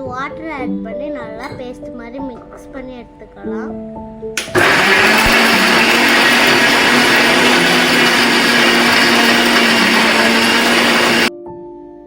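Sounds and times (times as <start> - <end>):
mixer grinder whirring: 4.4 - 11.3.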